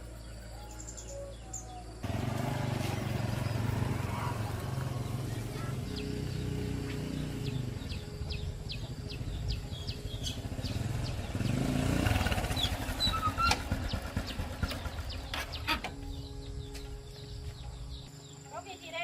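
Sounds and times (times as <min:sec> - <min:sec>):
birds chirping: 0:00.0 - 0:19.0
small engine running: 0:02.0 - 0:15.6.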